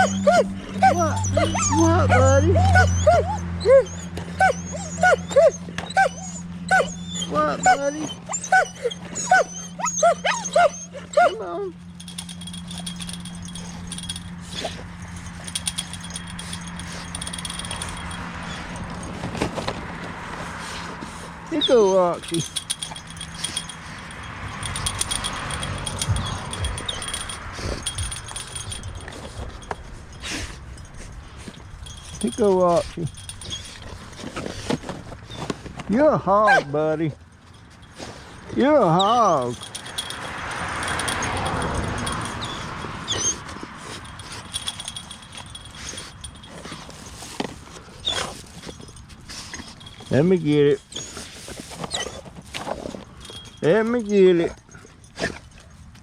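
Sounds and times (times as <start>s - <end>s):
wind chimes tinkling: 0.0s - 19.2s, 21.5s - 34.5s, 35.9s - 55.5s
dog whining: 0.0s - 19.4s, 20.5s - 35.6s, 36.4s - 55.4s.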